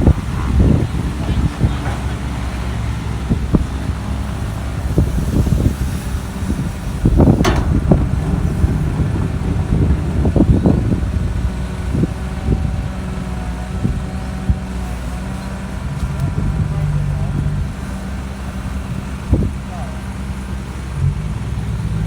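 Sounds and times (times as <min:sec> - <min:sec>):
diesel machinery engine running: 0:00.0 - 0:22.0
knocks and thuds: 0:07.1 - 0:11.5
sharp crack: 0:07.1 - 0:11.9.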